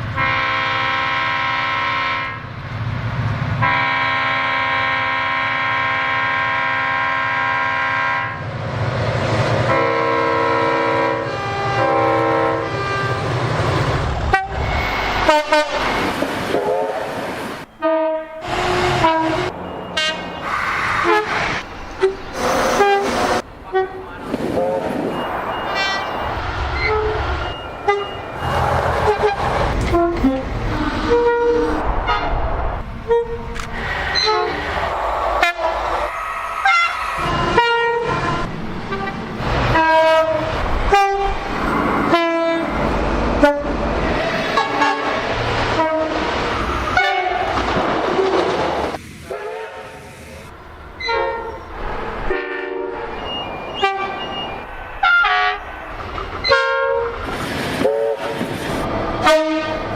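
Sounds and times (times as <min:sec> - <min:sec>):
low rumble of passing trains: 0:00.0 - 0:59.9
train horn blasts: 0:00.1 - 0:02.4, 0:03.6 - 0:08.4, 0:09.6 - 0:13.3, 0:14.3 - 0:16.0, 0:16.6 - 0:17.1, 0:17.7 - 0:20.4, 0:22.0 - 0:25.2, 0:26.8 - 0:32.4, 0:35.4 - 0:41.4, 0:44.5 - 0:46.3, 0:46.9 - 0:47.6, 0:49.3 - 0:50.0, 0:51.0 - 0:55.8, 0:56.4 - 0:57.2, 0:57.8 - 0:58.4, 0:59.2 - 0:59.9.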